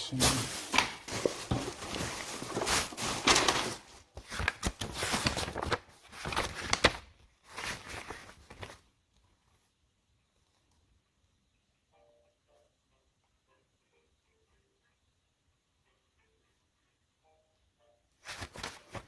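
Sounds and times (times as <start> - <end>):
paper rustling: 0.1 - 8.9, 18.2 - 19.0
pages turning: 0.2 - 8.9, 18.2 - 19.0.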